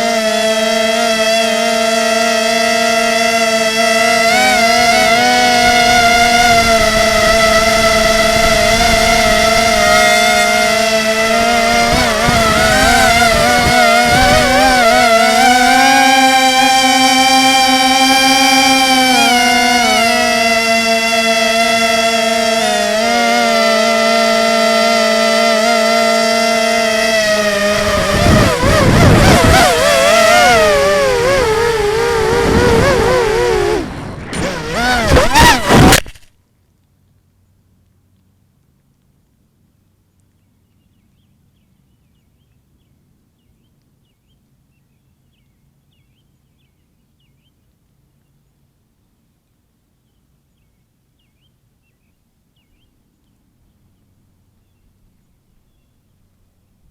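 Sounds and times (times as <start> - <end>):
quadcopter motors whining: 0.0 - 36.3.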